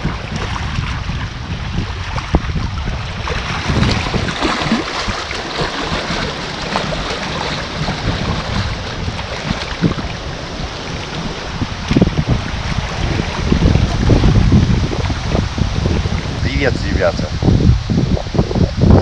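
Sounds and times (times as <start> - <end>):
wind buffeting microphone: 0.0 - 19.0
waves splashing on rocks: 3.2 - 17.3.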